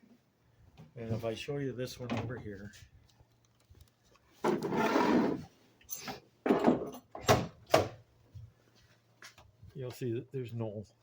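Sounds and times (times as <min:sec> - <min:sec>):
tool box lid scraping: 0:04.4 - 0:05.5.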